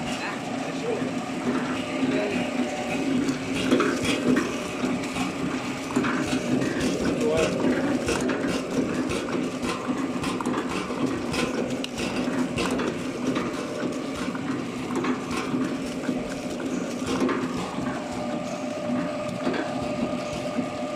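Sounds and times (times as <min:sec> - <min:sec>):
packaging machine hum: 0:00.0 - 0:20.9
mechanical clicks and clacks: 0:02.9 - 0:18.0.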